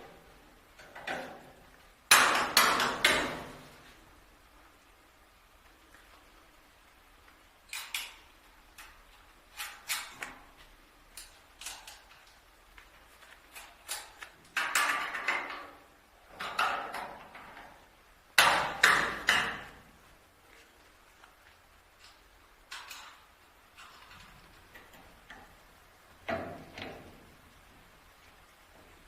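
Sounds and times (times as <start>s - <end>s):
hard objects knocking and clattering: 2.1s - 3.6s, 13.9s - 17.7s.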